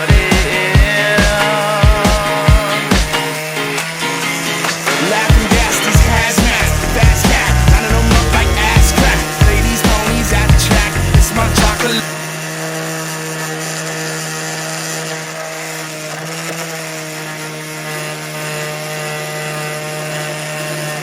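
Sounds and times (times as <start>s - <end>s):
power sander on wood: 0.0s - 21.0s.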